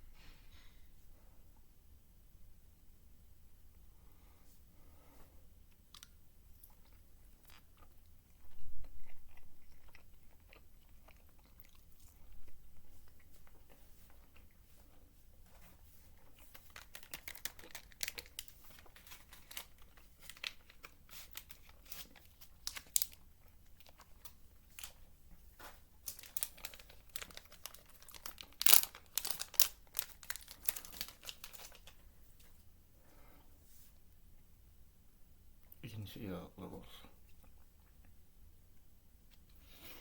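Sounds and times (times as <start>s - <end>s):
candy packaging crinkling and tearing: 16.2s - 32.5s.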